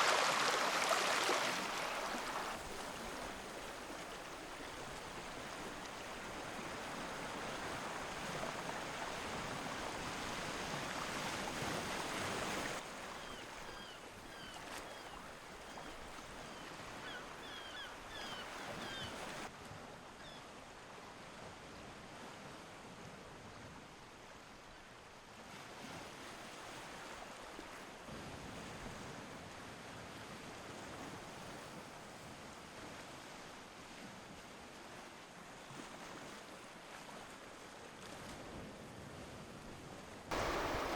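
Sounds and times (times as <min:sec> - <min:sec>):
surf hissing on shore: 0:00.0 - 0:13.8, 0:40.3 - 0:40.9.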